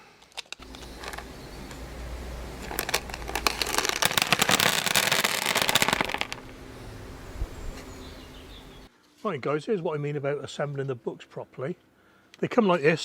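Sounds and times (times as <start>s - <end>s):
low rumble: 0.6s - 8.9s
rustling handling noise: 0.6s - 8.9s.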